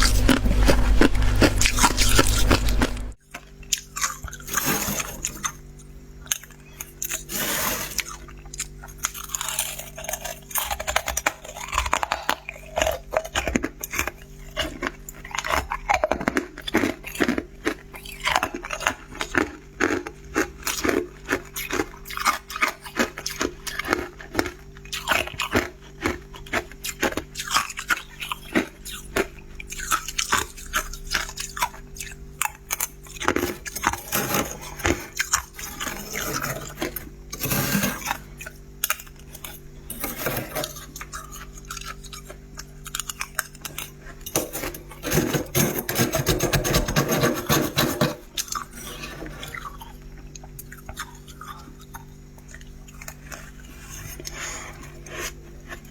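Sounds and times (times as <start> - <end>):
steady low hum: 0.0 - 8.1
frost being chewed crunching: 0.0 - 55.9.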